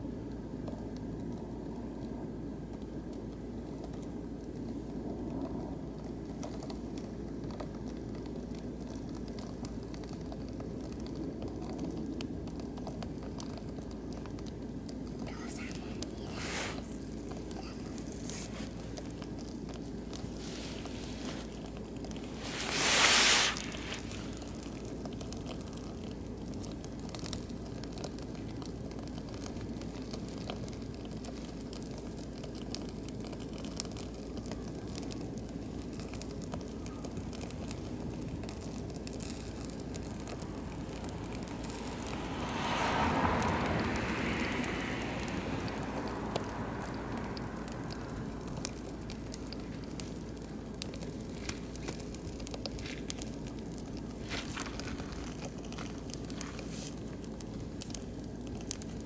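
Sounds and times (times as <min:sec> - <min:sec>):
logs crackling and popping in fire: 0:00.0 - 0:59.0
loud rush of noise: 0:22.2 - 0:24.4, 0:39.5 - 0:49.6.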